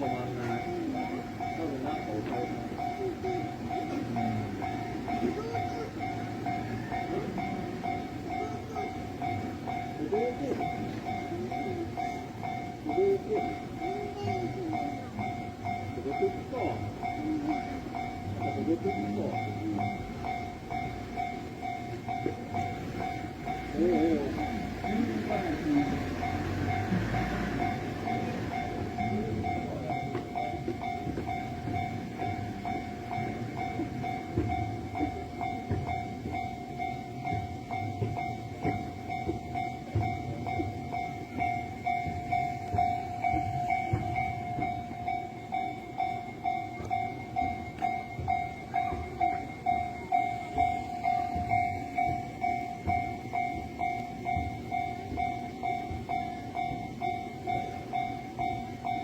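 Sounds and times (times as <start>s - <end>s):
level-crossing warning bell: 0.0s - 59.0s
train wheels clattering: 0.0s - 59.0s.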